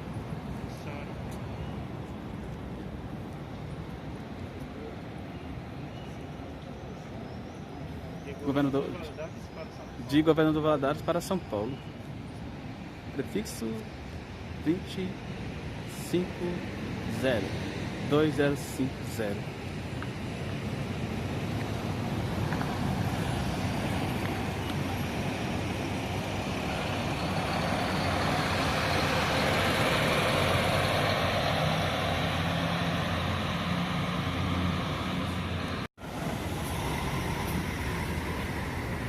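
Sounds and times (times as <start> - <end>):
diesel bus driving past: 16.3 - 39.0.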